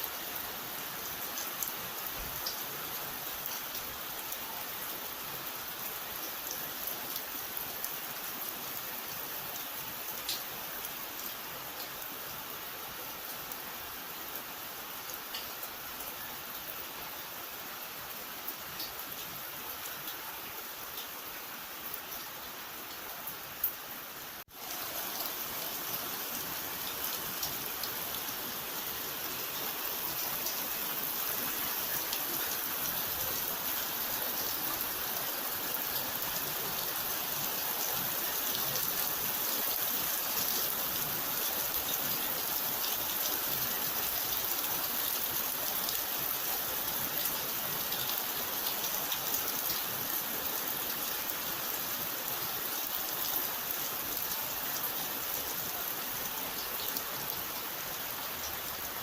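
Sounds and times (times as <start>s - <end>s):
steady rainfall: 0.0s - 59.0s.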